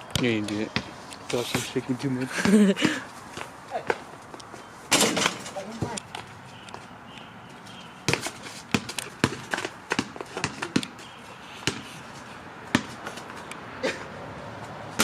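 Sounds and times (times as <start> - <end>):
basketball bouncing: 2.4 - 4.0, 8.1 - 11.9, 12.7 - 13.1.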